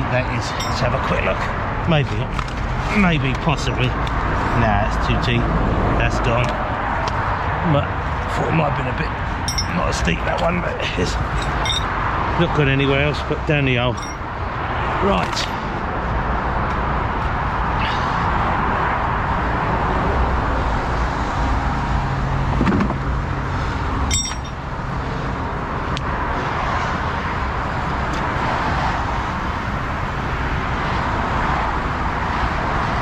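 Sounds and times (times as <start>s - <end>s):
motorway traffic noise: 0.0s - 33.0s
sharp metallic clink: 0.5s - 1.0s, 9.5s - 9.8s, 11.2s - 11.9s, 13.9s - 14.2s, 24.1s - 24.6s.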